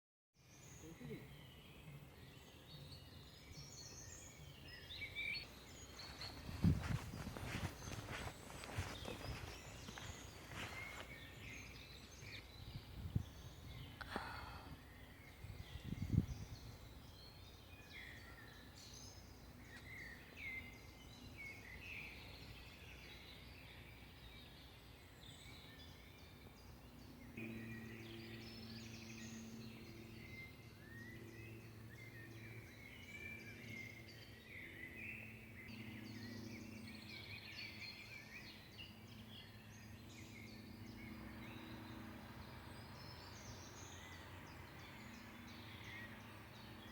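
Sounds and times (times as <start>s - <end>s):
small birds chirping: 0.4s - 46.9s
steady low hum: 23.4s - 46.9s.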